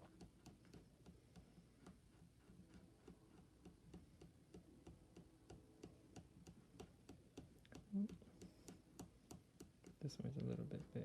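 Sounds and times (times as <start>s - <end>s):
faint regular ticking: 3.6s - 11.0s.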